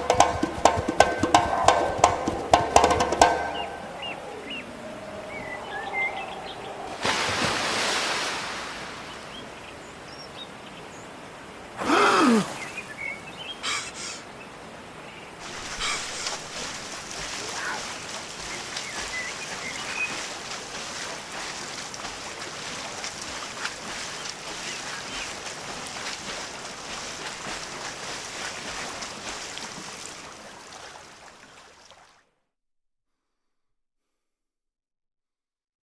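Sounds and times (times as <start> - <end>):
hiss-like outdoor background: 0.0 - 32.1
faint bird chirps: 3.0 - 7.0, 15.1 - 16.7.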